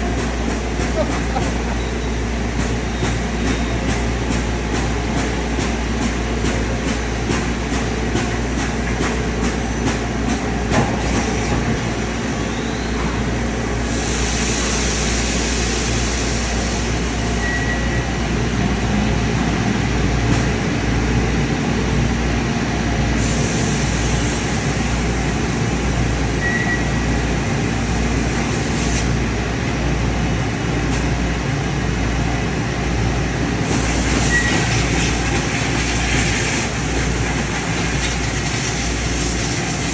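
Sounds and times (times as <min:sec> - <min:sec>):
machining center humming: 0:00.0 - 0:14.2.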